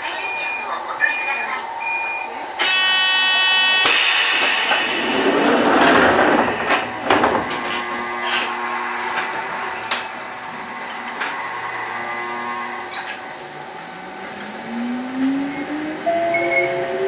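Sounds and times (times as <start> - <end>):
air hissing: 3.8 - 12.8.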